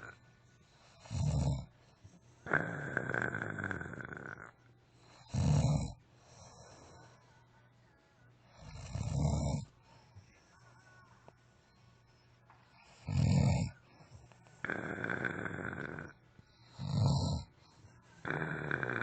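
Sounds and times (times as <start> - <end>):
person snoring: 0.8 - 1.7, 2.4 - 7.2, 8.6 - 9.7, 12.8 - 13.8, 14.5 - 19.0.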